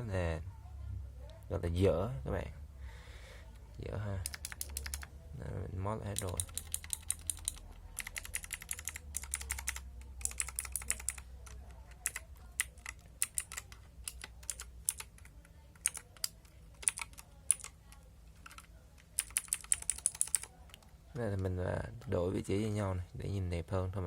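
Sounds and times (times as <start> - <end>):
mechanical keyboard typing: 4.2 - 5.1, 6.1 - 20.8.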